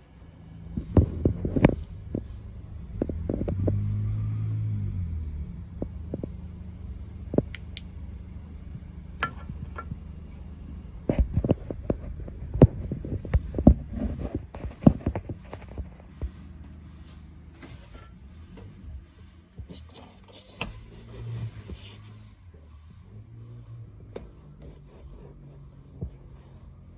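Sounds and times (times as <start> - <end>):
low steady hum: 0.0 - 26.9
sharp clicks and knocks: 9.2 - 10.0.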